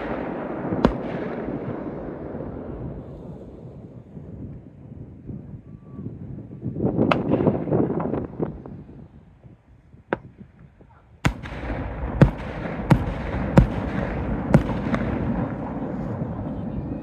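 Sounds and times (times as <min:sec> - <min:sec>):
fireworks crackling: 0:00.0 - 0:03.5, 0:11.3 - 0:16.5.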